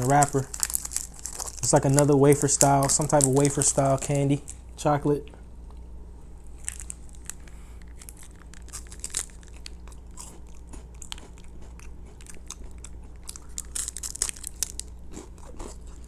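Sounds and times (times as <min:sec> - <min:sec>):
chewing crunchy wafer: 0:00.0 - 0:04.6, 0:06.5 - 0:16.0.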